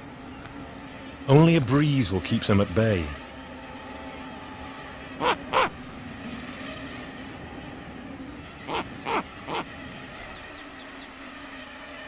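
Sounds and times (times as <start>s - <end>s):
faint steady background noise: 0.0s - 12.0s
owl calling: 5.2s - 5.8s, 8.7s - 9.7s.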